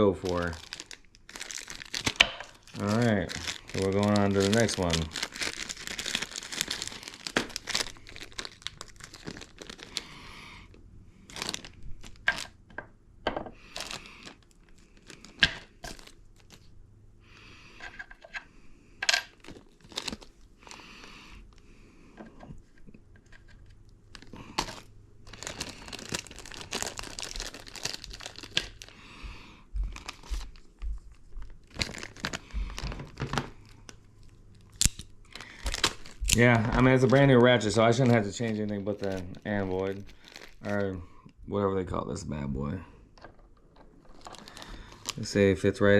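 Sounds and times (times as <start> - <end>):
rustling and crinkling: 0.0 - 10.1, 11.2 - 12.8, 19.2 - 20.8, 22.2 - 29.0, 29.8 - 41.0, 43.3 - 45.4.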